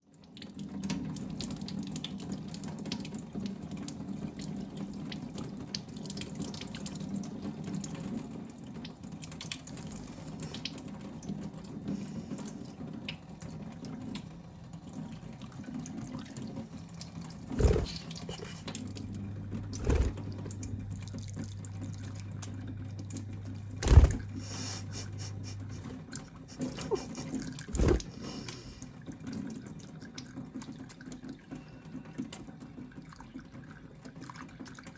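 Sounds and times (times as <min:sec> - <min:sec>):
tap water running into sink: 0:00.1 - 0:34.9
low hum: 0:17.5 - 0:26.1.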